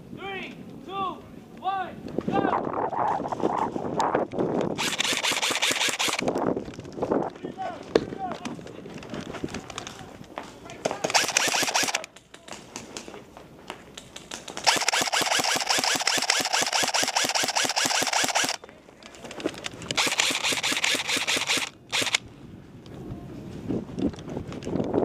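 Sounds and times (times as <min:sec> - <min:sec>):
airsoft rifles firing full-auto: 0:04.8 - 0:06.3, 0:10.9 - 0:12.1, 0:14.6 - 0:18.6, 0:20.0 - 0:22.2.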